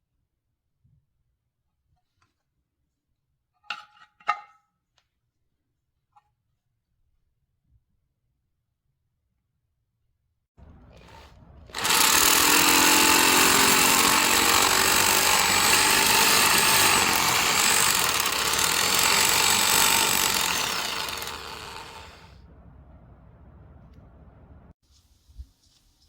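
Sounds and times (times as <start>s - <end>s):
handheld power tool running: 11.0s - 22.4s.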